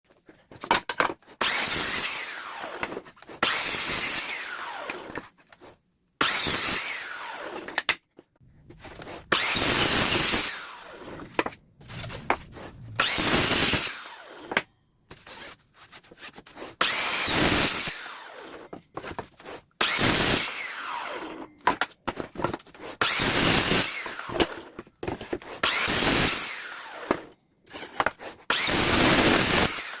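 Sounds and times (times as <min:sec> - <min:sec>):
electric miter saw whining: 0:01.4 - 0:05.2, 0:06.2 - 0:07.8, 0:09.3 - 0:14.7, 0:16.8 - 0:18.8, 0:19.8 - 0:21.5, 0:23.0 - 0:24.8, 0:25.6 - 0:27.3, 0:28.5 - 0:30.0.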